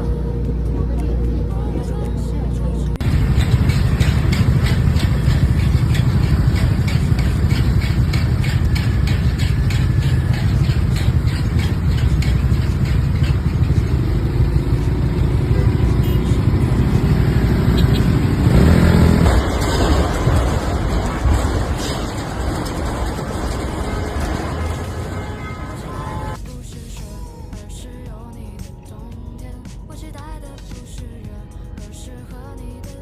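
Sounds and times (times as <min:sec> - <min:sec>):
vehicle low rumble: 0:00.0 - 0:32.8
rapid clicking: 0:03.0 - 0:15.3.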